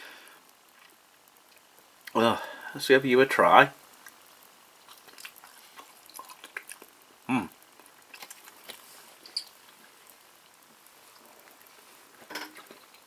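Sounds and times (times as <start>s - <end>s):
person chewing food: 0.6s - 2.2s, 3.9s - 13.0s
wet mouth clicks: 4.8s - 9.6s
person humming hmm: 7.3s - 7.6s.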